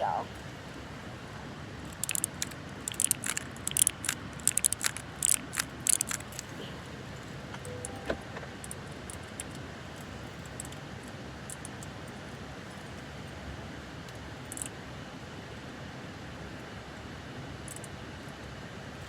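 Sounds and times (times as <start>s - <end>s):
fidget toy keys clicking: 1.8s - 6.6s, 11.5s - 11.9s, 14.4s - 14.7s, 17.7s - 17.9s.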